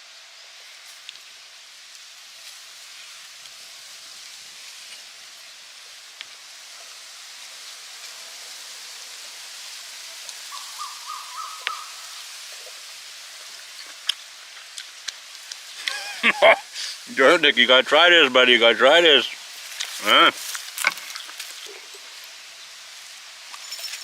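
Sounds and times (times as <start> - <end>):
steady outdoor hiss: 0.0 - 24.0
bird calling repeated notes: 10.5 - 12.0.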